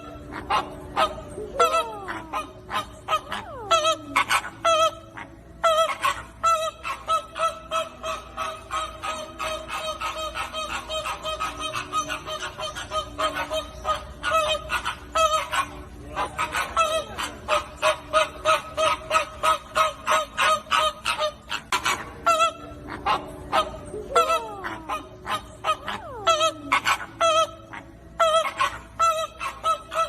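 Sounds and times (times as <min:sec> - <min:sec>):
flamingos honking: 0:00.0 - 0:30.0.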